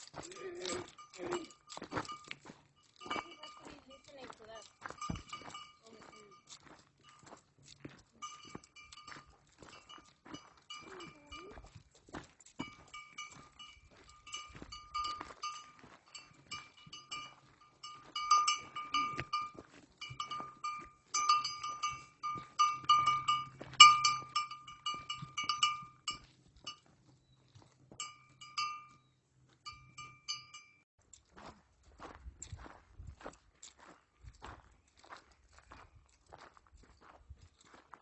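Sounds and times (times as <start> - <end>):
small metal bell clanking: 0.0 - 11.8, 12.4 - 26.9, 27.9 - 30.8.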